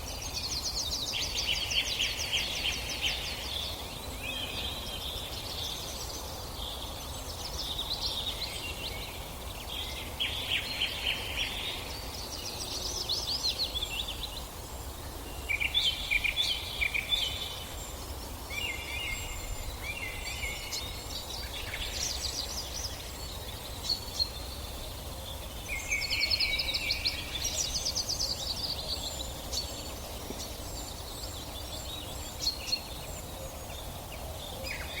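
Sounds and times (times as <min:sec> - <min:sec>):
songbirds trilling: 0:00.0 - 0:35.0.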